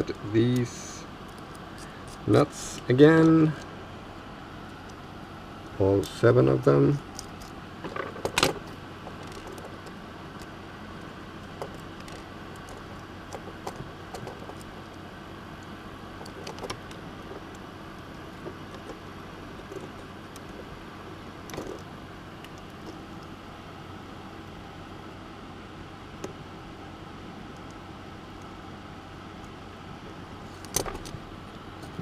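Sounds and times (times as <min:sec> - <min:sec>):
steady hiss: 0:00.0 - 0:13.8.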